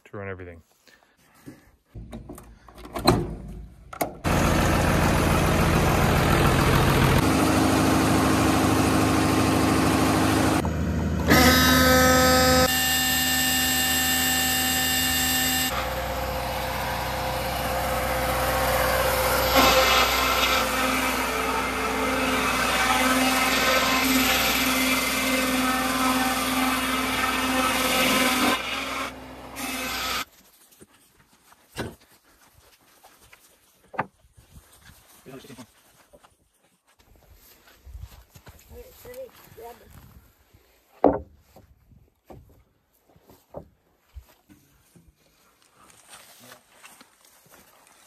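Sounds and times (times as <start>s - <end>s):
diesel generator running: 4.0s - 30.2s.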